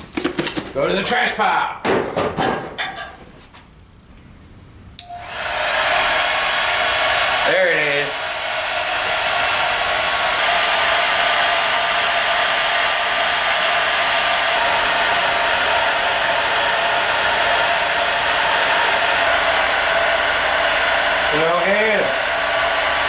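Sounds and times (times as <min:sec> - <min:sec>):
hair dryer running: 0:05.0 - 0:23.0.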